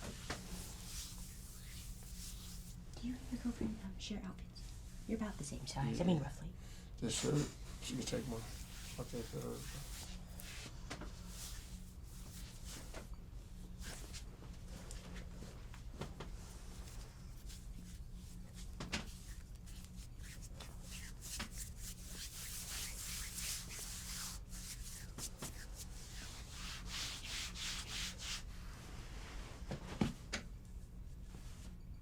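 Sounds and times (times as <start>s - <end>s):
hands rubbing over skin: 0.0s - 2.9s, 7.9s - 28.5s
steady low hum: 0.0s - 32.0s.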